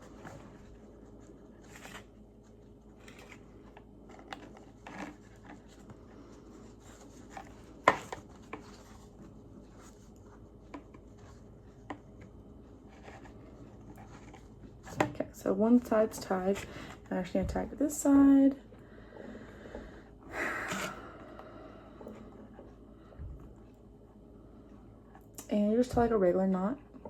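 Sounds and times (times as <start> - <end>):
string rustling and scraping: 0.0 - 18.1.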